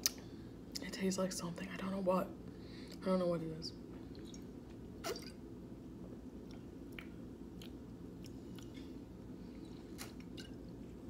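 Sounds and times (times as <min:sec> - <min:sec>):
low background hum: 0:00.0 - 0:11.0
person chewing food: 0:06.4 - 0:11.0.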